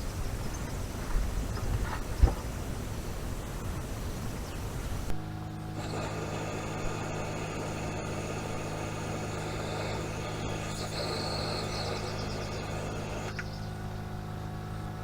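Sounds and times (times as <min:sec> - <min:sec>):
engine idling: 0:05.0 - 0:15.0
brief high hiss: 0:05.8 - 0:13.5.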